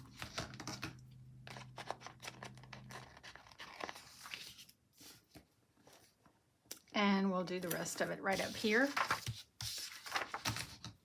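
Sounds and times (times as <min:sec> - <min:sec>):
paper stickers crinkling: 0:00.0 - 0:05.1, 0:07.6 - 0:11.0.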